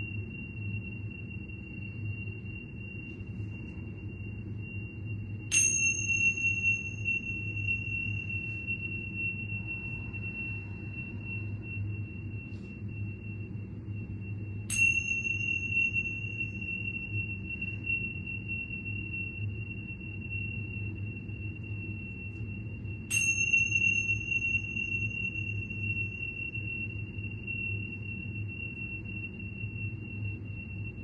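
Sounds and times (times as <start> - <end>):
high ringing tone: 0.0 - 31.0
low hum: 0.0 - 31.0
metallic chime strikes: 5.5 - 10.5, 14.7 - 17.0, 23.1 - 26.1.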